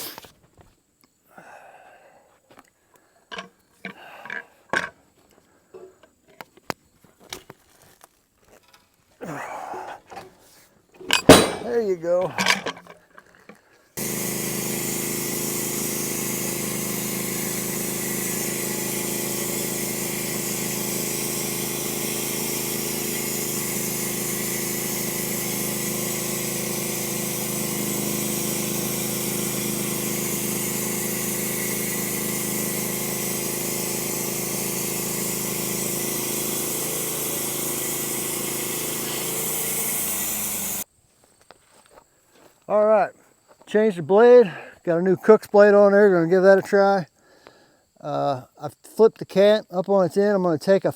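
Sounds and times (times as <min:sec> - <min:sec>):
band blade cutting wood: 0:11.2 - 0:12.0, 0:14.0 - 0:40.8
sawmill engine hum: 0:11.2 - 0:12.2, 0:14.0 - 0:40.9.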